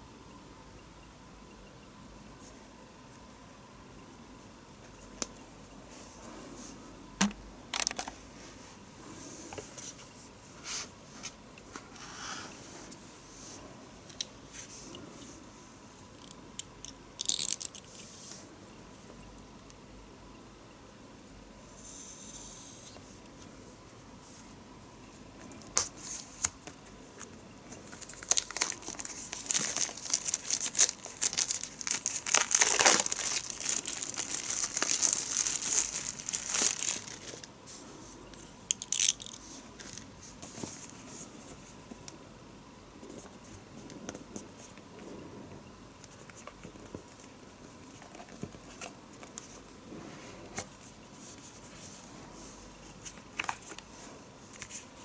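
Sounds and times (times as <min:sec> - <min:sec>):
packaging tearing and crinkling: 0:17.2 - 0:17.8, 0:27.9 - 0:37.5.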